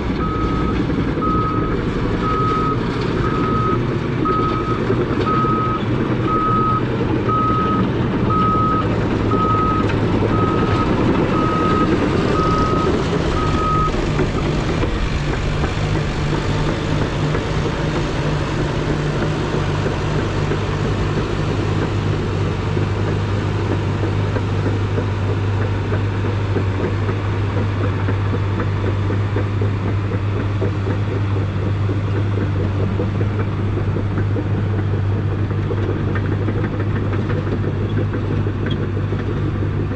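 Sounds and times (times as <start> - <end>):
bulldozer diesel engine running: 0.0 - 39.9
reverse alarm beeping: 0.2 - 14.5.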